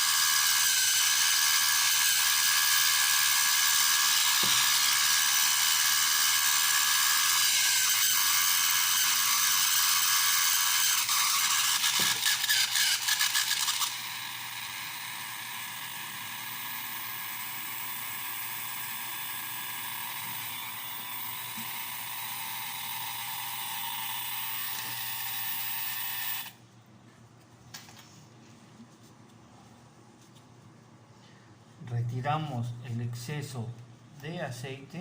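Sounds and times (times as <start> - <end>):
toy motor and gears running: 0.0 - 26.6.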